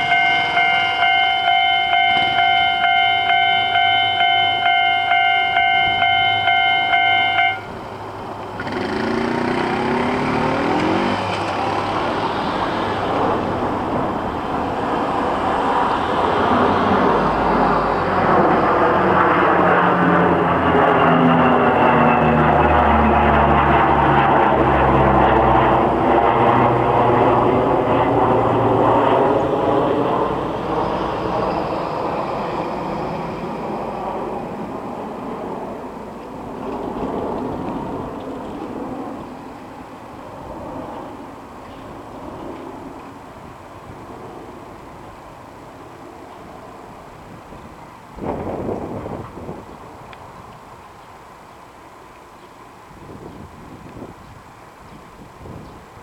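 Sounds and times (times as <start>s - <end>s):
level-crossing alarm ringing: 0.0s - 7.8s
vehicle passing close by: 8.4s - 35.2s.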